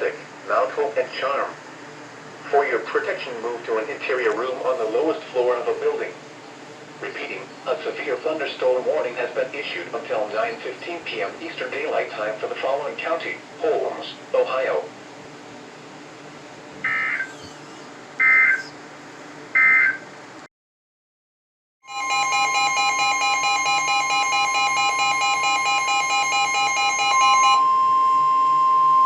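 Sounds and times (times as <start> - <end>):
pulsing alert alarm: 16.8 - 17.4, 18.2 - 18.7, 21.9 - 28.4
screeching data bursts: 16.8 - 18.8
steady warning tone: 16.8 - 18.8, 21.8 - 29.0.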